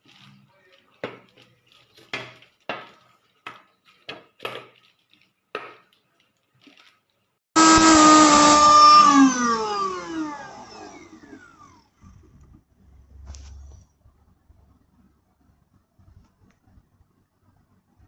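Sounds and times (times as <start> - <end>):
mixer grinder motor whining: 7.6 - 12.2.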